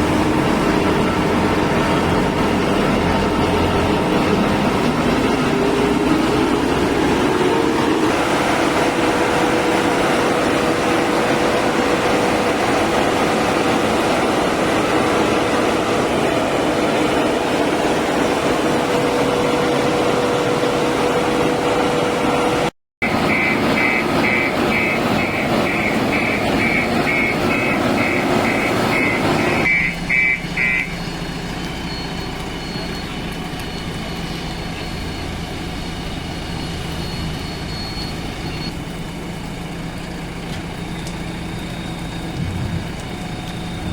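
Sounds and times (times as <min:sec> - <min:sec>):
diesel engine running: 0:00.0 - 0:43.9
high electronic beeping: 0:23.0 - 0:31.0, 0:41.6 - 0:43.9.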